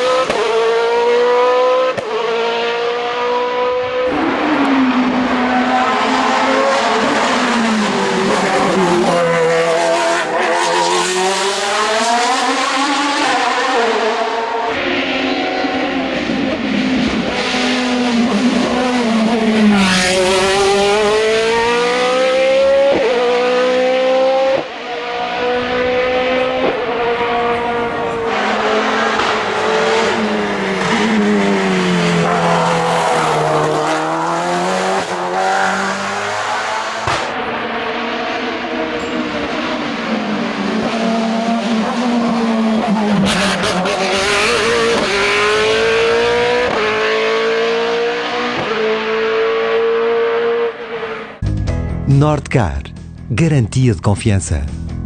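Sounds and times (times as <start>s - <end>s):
race car engines revving: 0.0s - 51.4s.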